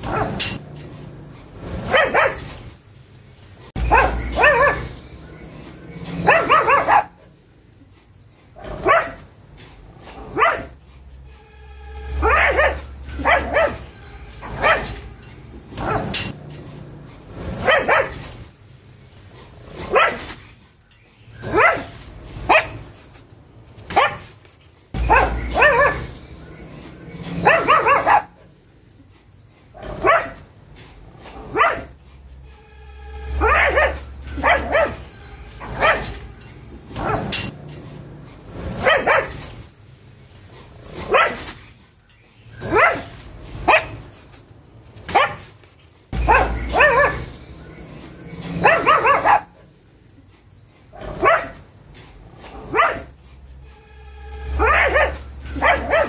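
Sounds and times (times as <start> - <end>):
dog barking: 0.0 - 0.6, 1.8 - 2.5, 3.8 - 5.0, 6.0 - 7.3, 8.6 - 9.3, 10.1 - 10.8, 12.2 - 15.0, 15.7 - 16.3, 17.5 - 18.3, 19.8 - 20.3, 21.4 - 22.9, 23.9 - 24.3, 25.0 - 26.6, 27.3 - 28.4, 29.8 - 30.4, 31.3 - 32.0, 33.3 - 36.2, 36.9 - 37.5, 38.8 - 39.4, 41.0 - 41.5, 42.6 - 44.1, 45.1 - 45.5, 46.2 - 47.8, 48.5 - 49.6, 51.0 - 51.6, 52.5 - 53.1, 54.5 - 56.0.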